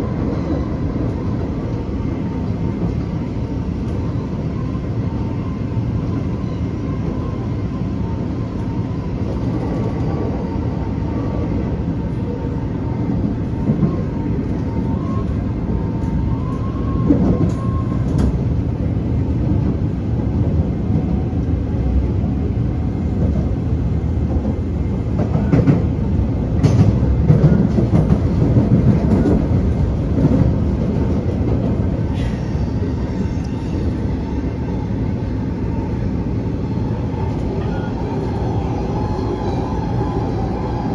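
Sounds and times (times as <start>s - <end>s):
metro train rolling rumble: 0.0s - 40.9s.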